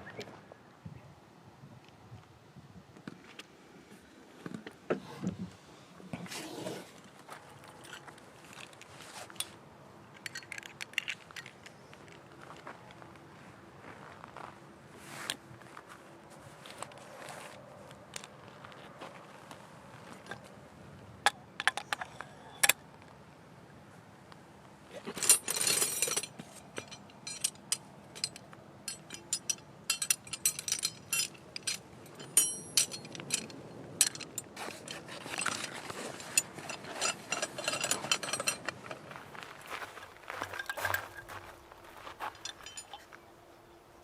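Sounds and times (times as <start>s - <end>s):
hard objects clinking and rattling: 10.1s - 12.2s, 25.0s - 39.2s, 40.4s - 41.4s, 42.2s - 43.2s
rustling: 24.9s - 43.2s.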